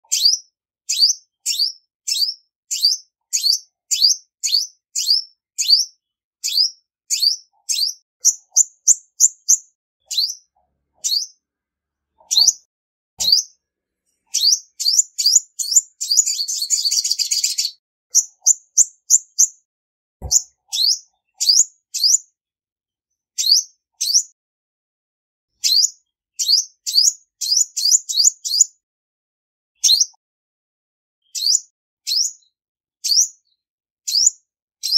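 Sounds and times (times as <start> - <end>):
sunbird high sharp chirps: 0.1 - 11.4, 12.2 - 13.6, 14.3 - 19.6, 20.2 - 22.2, 23.4 - 24.3, 25.6 - 28.7, 29.8 - 30.2, 31.2 - 32.4
fast buzzy bird trill: 14.3 - 19.2.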